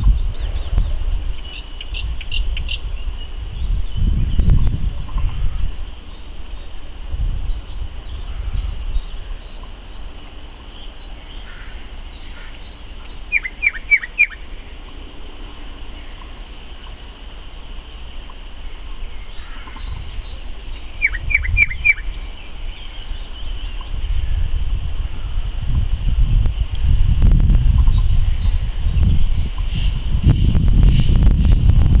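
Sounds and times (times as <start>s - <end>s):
low rumble: 0.0s - 10.2s
nightingale singing: 0.0s - 25.5s, 26.5s - 31.7s.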